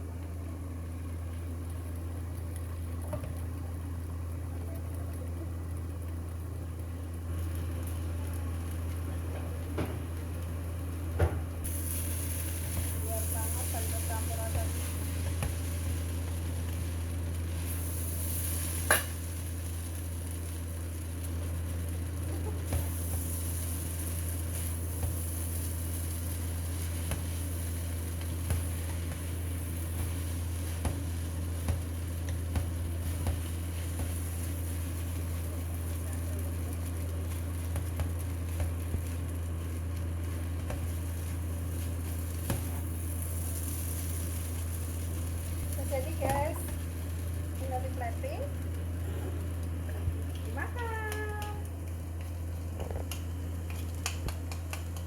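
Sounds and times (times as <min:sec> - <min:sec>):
food sizzling in a pan: 0:11.6 - 0:51.6.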